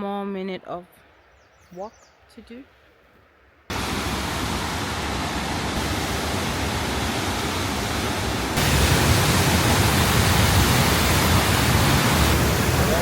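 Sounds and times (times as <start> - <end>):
waterfall rushing: 3.7 - 13.0.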